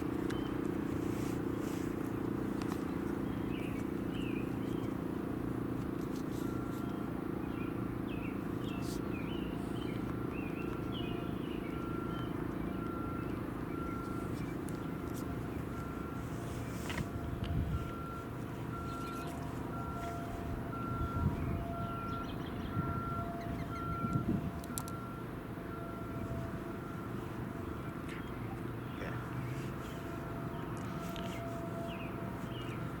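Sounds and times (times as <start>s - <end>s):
birds chirping: 0.0s - 33.0s
warning siren steady tone: 0.0s - 33.0s.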